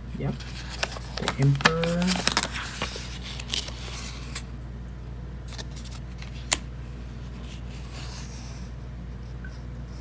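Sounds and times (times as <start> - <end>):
card rustling off deck: 0.3 - 4.5.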